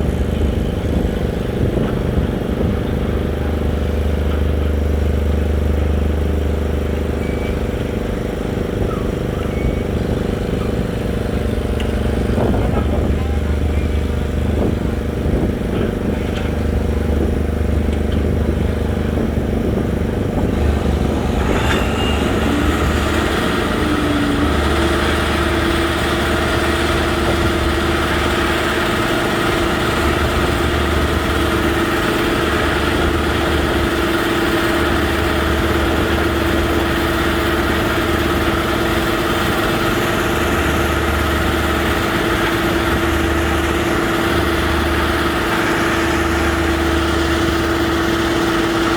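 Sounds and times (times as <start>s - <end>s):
heavy machine engine running: 0.0s - 48.9s
high-pitched whine: 20.0s - 28.3s.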